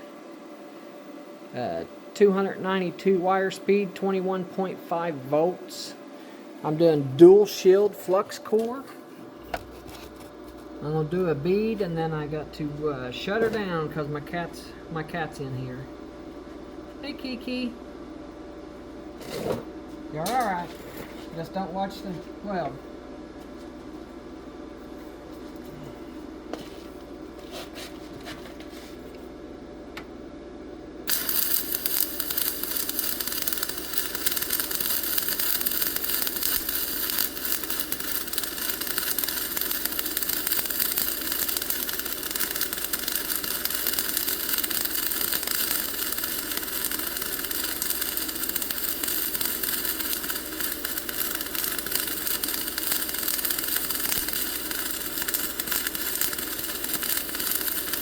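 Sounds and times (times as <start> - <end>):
welding arc hissing: 31.0 - 58.0.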